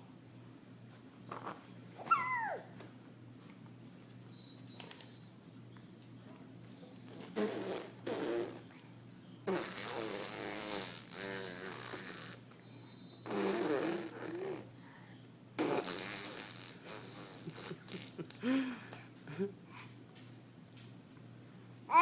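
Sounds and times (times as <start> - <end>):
child squealing and cooing: 2.0 - 2.8
child lip-buzzing: 7.1 - 8.9, 9.5 - 12.5, 13.2 - 14.8, 15.6 - 18.3.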